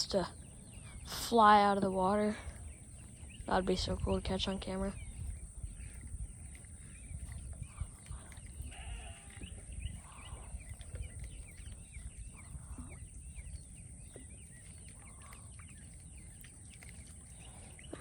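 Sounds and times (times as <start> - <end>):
animal calls: 5.6 - 13.5.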